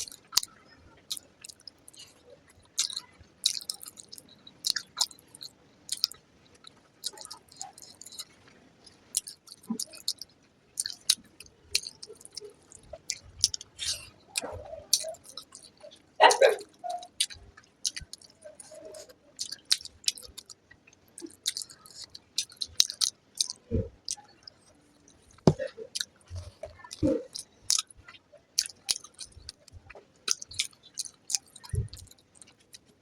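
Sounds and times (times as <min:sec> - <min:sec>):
close chewing with mouth clicks: 0:00.0 - 0:33.0.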